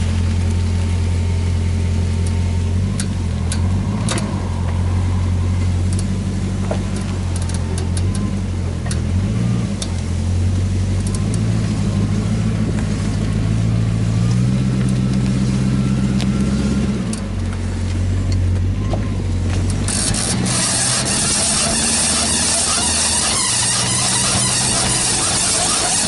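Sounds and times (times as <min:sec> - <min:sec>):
car engine low hum: 0:00.0 - 0:26.0
road and wind noise hiss: 0:00.0 - 0:26.0
faint wavering wheel whine: 0:19.1 - 0:26.0.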